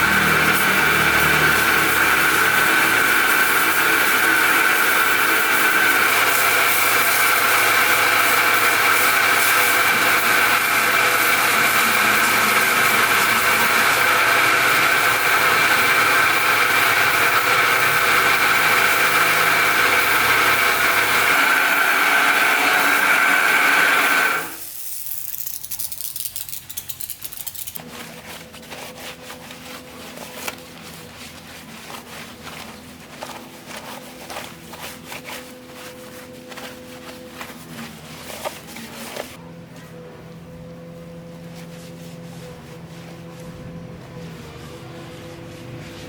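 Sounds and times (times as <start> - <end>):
machine whining: 0.0 - 27.9.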